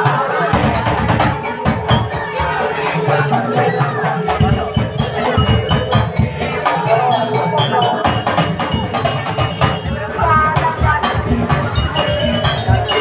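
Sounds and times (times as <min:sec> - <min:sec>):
drum strikes: 0:00.0 - 0:13.0
ringing bell-like melody: 0:00.0 - 0:13.0.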